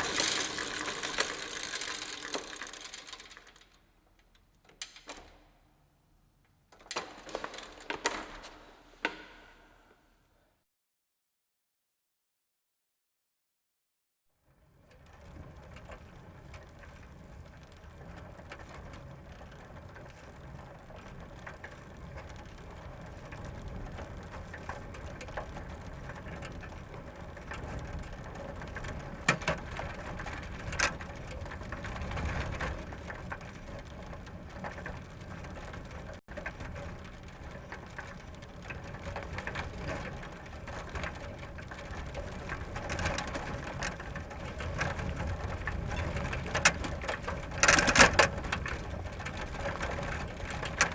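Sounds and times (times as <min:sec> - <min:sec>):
bicycle rolling rumble: 0:00.0 - 0:03.8, 0:14.6 - 0:50.9
sharp clicks: 0:00.0 - 0:03.8
bicycle chain ticking: 0:00.0 - 0:05.2, 0:14.9 - 0:50.9.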